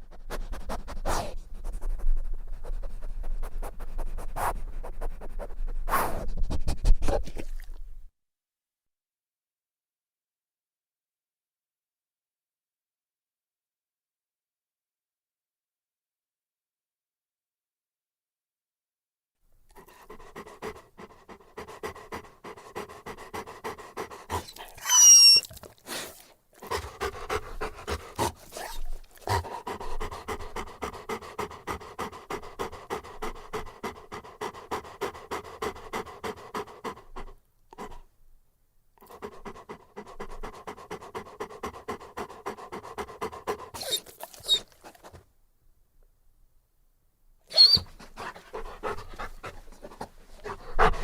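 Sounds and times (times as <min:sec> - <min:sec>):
dog panting: 0:00.0 - 0:07.7, 0:19.8 - 0:38.1, 0:39.0 - 0:45.2, 0:47.5 - 0:51.0
dog whining: 0:24.3 - 0:27.4, 0:28.2 - 0:30.2, 0:43.7 - 0:45.2, 0:47.5 - 0:51.0.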